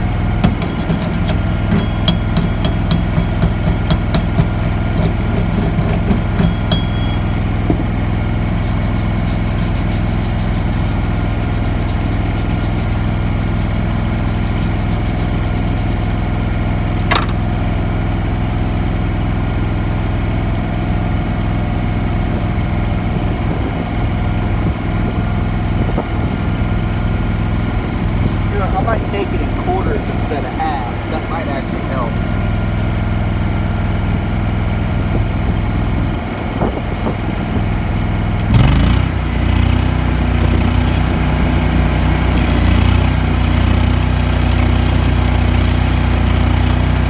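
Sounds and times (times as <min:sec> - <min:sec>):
welder engine running: 0:00.0 - 0:17.5, 0:38.3 - 0:47.0.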